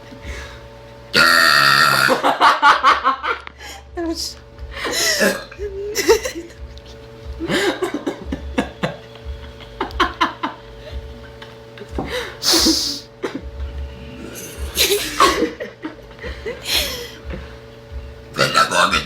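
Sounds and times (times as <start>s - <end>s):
laughter: 2.1s - 3.4s, 4.8s - 11.0s, 14.7s - 17.1s.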